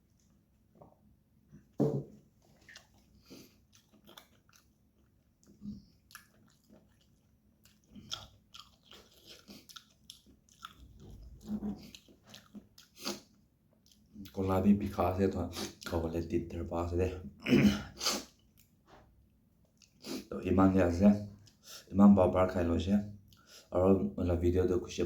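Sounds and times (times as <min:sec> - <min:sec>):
person chewing food: 0:02.4 - 0:14.4, 0:19.6 - 0:20.3.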